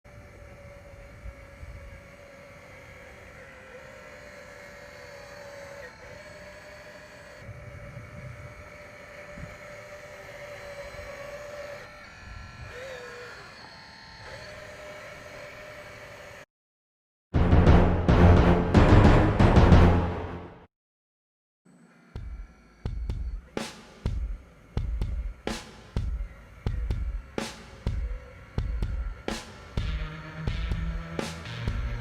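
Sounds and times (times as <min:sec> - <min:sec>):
hydraulic pump motor whining: 0:00.1 - 0:16.4, 0:24.3 - 0:32.0.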